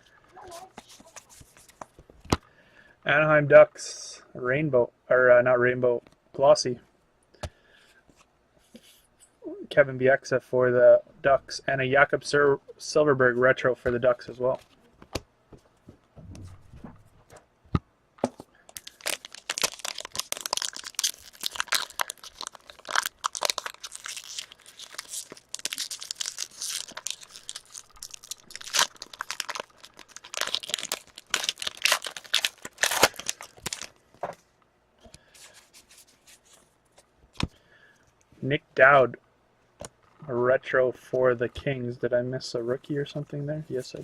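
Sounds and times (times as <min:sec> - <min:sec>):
wrappers tearing and crinkling: 0:18.7 - 0:34.0.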